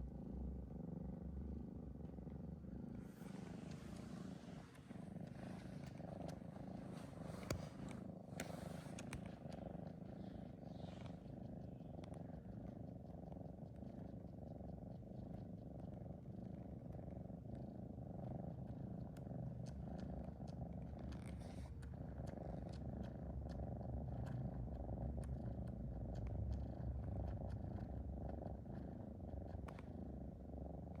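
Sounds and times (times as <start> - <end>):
pet snoring: 17.6 - 31.0.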